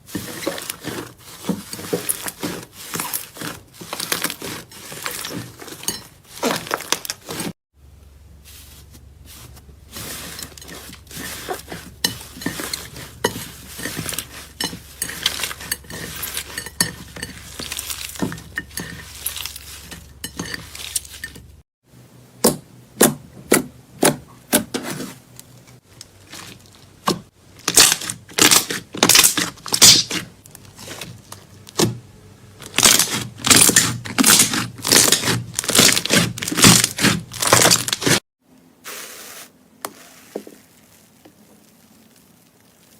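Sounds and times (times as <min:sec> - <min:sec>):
slime crackling and popping: 0:40.6 - 0:42.9.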